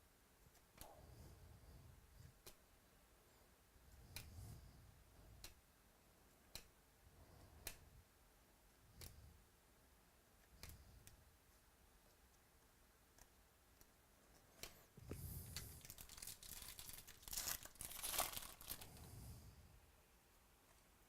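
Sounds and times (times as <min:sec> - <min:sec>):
foil wrapper tearing and crinkling: 0:15.8 - 0:19.0.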